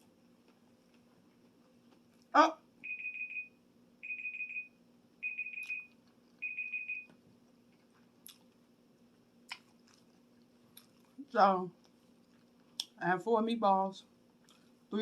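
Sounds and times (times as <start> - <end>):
timer alarm beeping: 2.8 - 7.1.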